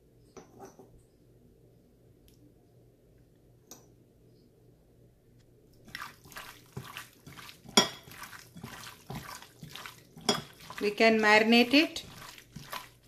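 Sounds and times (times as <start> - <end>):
wet squelching mixing: 5.8 - 13.0.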